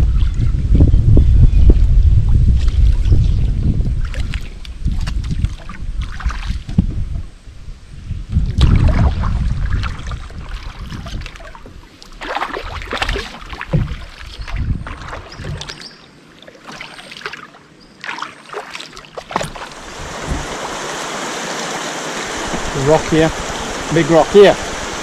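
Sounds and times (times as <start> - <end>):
wind rumble on microphone: 0.0 - 15.9, 19.4 - 21.3
paddle strokes splashing in water: 2.5 - 7.3, 8.5 - 25.0
sharp paddle knocks: 12.9 - 14.0.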